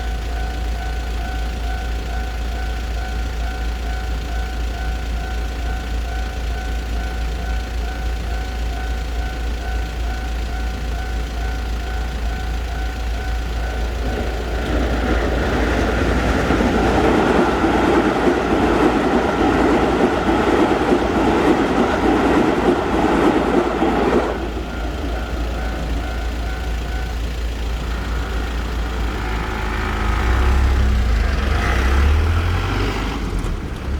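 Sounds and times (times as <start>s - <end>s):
level-crossing warning bell: 0.0s - 32.6s
electric train passing: 0.0s - 33.9s
wheel clatter: 11.8s - 31.6s.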